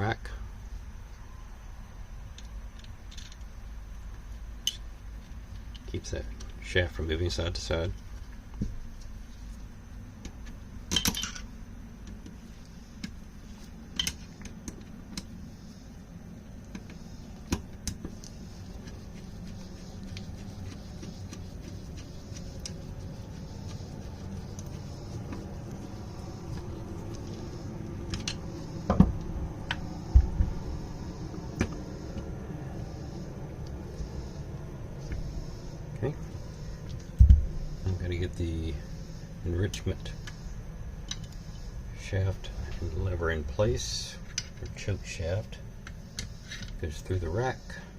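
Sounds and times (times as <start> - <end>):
low steady hum: 0.0 - 47.9
metal parts clinking: 10.9 - 11.5.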